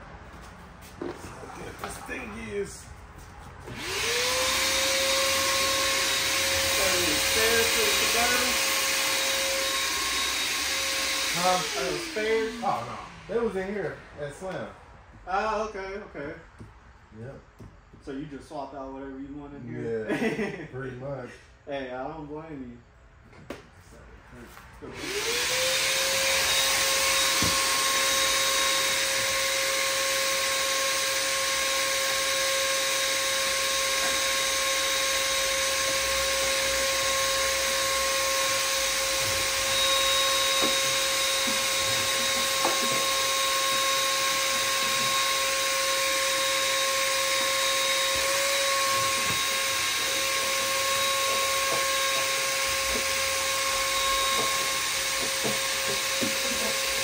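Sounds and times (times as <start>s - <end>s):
shop vacuum motor running: 3.6s - 14.6s, 24.8s - 57.0s.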